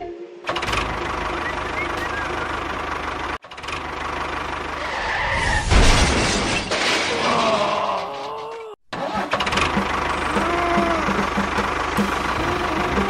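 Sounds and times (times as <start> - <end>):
cartoon vehicle engine pulsing: 0.5 - 5.2, 8.1 - 13.0.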